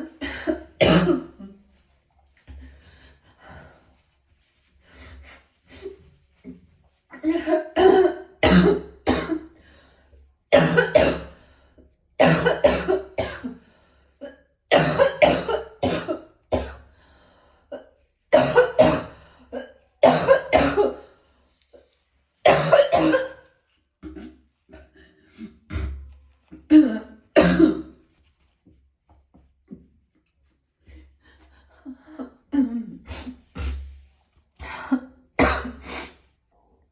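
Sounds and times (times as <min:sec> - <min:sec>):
person coughing hard: 0:00.0 - 0:01.3, 0:07.3 - 0:09.4, 0:10.5 - 0:11.3, 0:12.2 - 0:13.6, 0:14.2 - 0:16.8, 0:18.3 - 0:21.0, 0:22.5 - 0:23.4, 0:26.7 - 0:27.8, 0:35.4 - 0:35.8.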